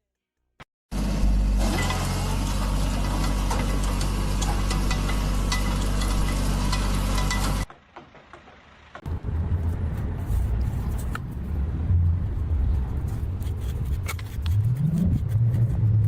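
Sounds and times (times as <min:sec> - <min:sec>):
engine running and revving: 0:00.9 - 0:07.7, 0:14.5 - 0:16.0.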